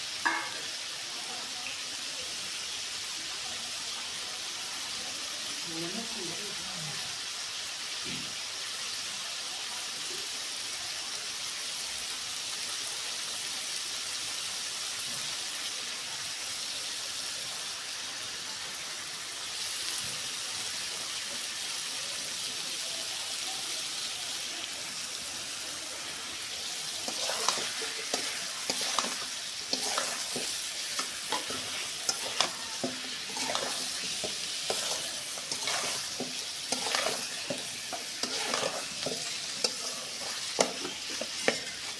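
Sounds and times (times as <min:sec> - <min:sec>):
liver sizzling in frying: 0:00.0 - 0:41.9
spatula clinking and scraping: 0:00.2 - 0:00.7, 0:26.5 - 0:41.9.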